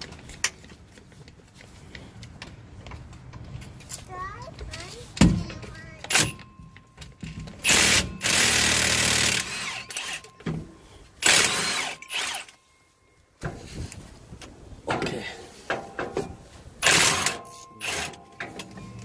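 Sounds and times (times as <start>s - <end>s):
power tool running: 7.6s - 10.3s, 11.2s - 12.6s, 16.8s - 18.2s.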